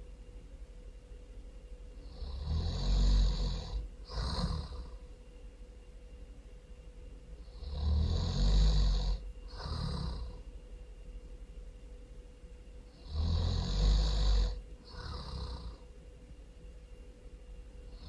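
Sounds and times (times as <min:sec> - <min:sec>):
loud rattling snoring: 0:02.0 - 0:05.0, 0:07.4 - 0:10.4, 0:12.9 - 0:15.8.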